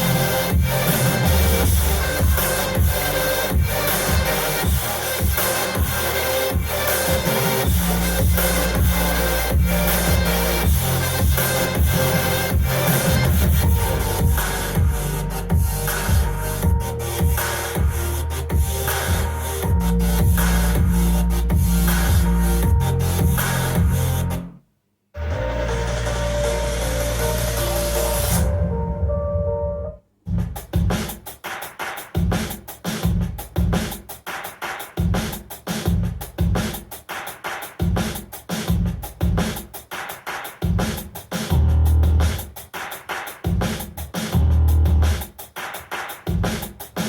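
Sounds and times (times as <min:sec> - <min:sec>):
electronic dance music: 0:00.0 - 0:24.5, 0:25.2 - 0:30.0.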